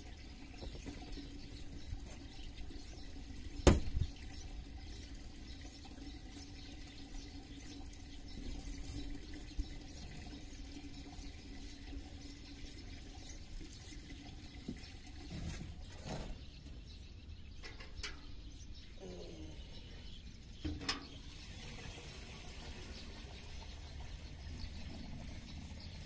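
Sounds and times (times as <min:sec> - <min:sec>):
running water: 0:00.0 - 0:16.9, 0:17.6 - 0:26.0
short bird calls: 0:18.9 - 0:20.2.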